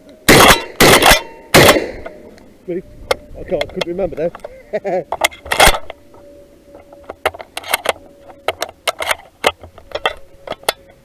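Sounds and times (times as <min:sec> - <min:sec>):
gun handling clicks and knocks: 0:00.3 - 0:01.3, 0:03.1 - 0:06.2, 0:06.8 - 0:11.0
shotgun shot: 0:00.3 - 0:02.2.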